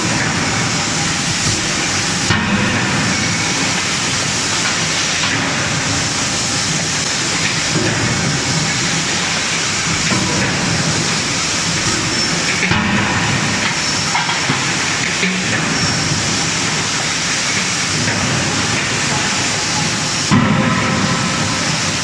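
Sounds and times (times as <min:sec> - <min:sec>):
workshop machinery hiss and rumble: 0:00.0 - 0:22.0.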